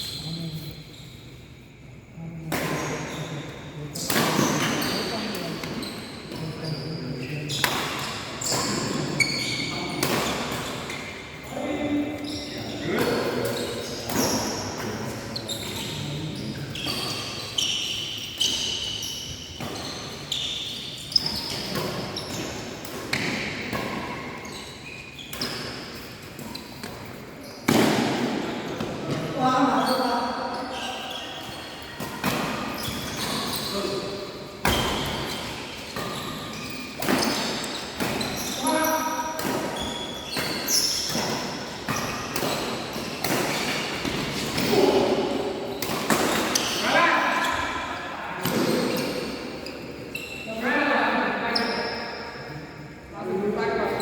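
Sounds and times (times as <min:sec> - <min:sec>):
shoes squeaking on court: 0:00.0 - 0:01.8, 0:02.6 - 0:53.0
racket hitting shuttlecock: 0:39.3 - 0:44.7, 0:45.8 - 0:46.8.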